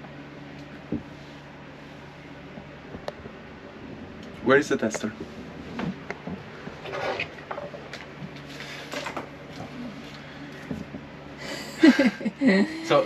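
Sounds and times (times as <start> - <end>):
steady low hum: 0.0 - 13.0
objects clattering and knocking: 4.9 - 9.8.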